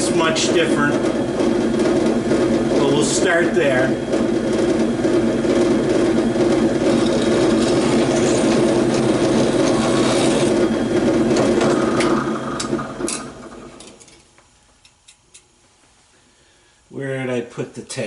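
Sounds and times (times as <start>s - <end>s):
electric drill boring plastic: 4.1s - 13.9s.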